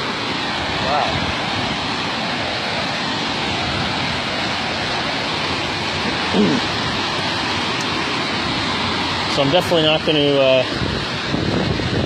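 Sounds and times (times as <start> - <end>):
running water rushing: 0.0 - 12.0
short vocal sound: 6.3 - 6.7.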